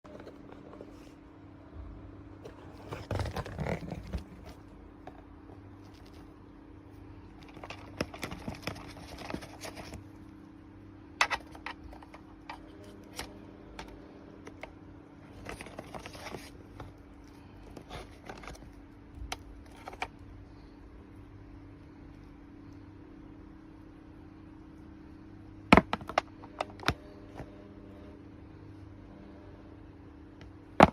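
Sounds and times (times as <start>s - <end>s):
handling scraping and rustling: 0.0s - 1.2s, 2.4s - 6.4s, 7.3s - 10.3s, 15.3s - 20.7s
steady low hum: 0.0s - 30.9s.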